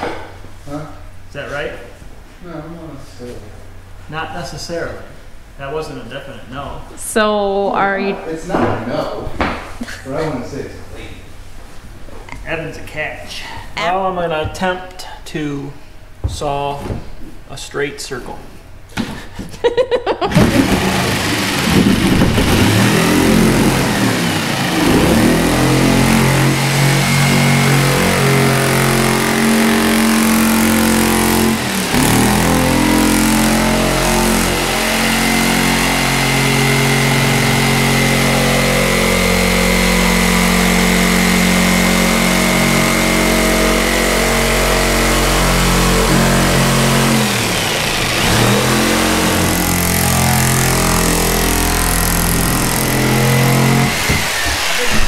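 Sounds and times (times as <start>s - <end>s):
power saw cutting: 20.3s - 55.0s.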